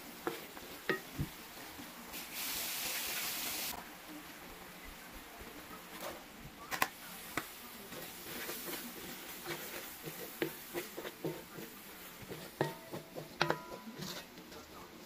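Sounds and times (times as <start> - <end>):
utensils knocking on cookware: 9.5 - 14.3.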